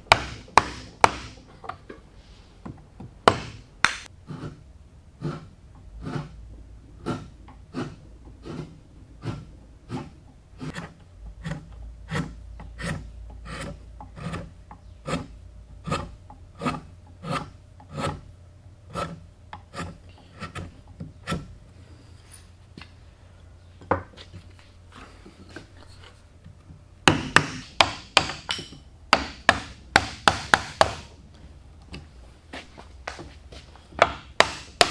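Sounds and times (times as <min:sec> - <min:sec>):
hand tool stroking over wood: 0:07.0 - 0:10.9.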